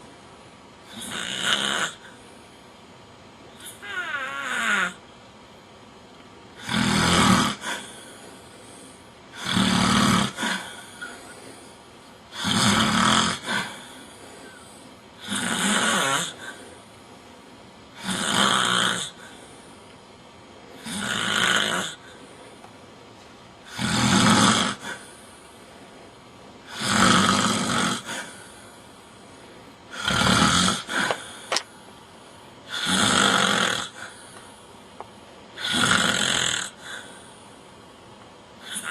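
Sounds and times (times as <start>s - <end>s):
man snoring loudly: 0.9s - 2.2s, 3.6s - 5.0s, 6.6s - 11.2s, 12.3s - 14.6s, 15.2s - 16.7s, 18.0s - 19.4s, 20.8s - 22.2s, 23.6s - 25.2s, 26.7s - 28.6s, 29.9s - 31.4s, 32.7s - 34.4s, 35.6s - 37.3s, 38.6s - 38.9s
quiet breathing: 7.5s - 9.5s, 10.3s - 12.6s, 13.4s - 15.4s, 16.1s - 18.1s, 19.1s - 21.1s, 24.7s - 26.8s, 28.0s - 30.0s, 30.8s - 32.9s, 33.9s - 35.8s, 36.7s - 38.9s.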